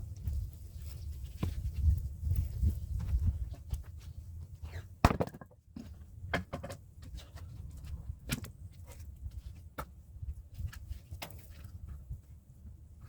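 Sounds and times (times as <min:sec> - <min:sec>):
axe striking firewood logs: 0:05.0 - 0:06.8.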